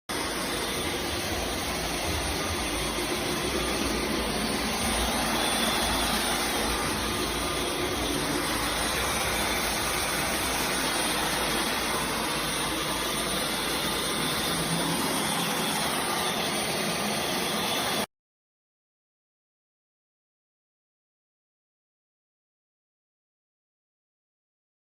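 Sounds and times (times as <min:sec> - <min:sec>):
stick vacuum cleaner whirring: 0:00.1 - 0:18.1.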